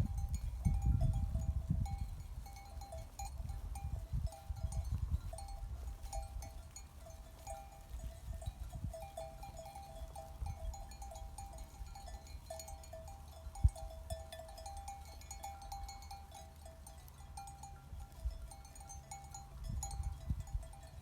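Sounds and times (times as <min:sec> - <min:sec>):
low wind rumble: 0:00.0 - 0:07.4, 0:17.8 - 0:21.0
sheep bells clinking: 0:00.0 - 0:21.0.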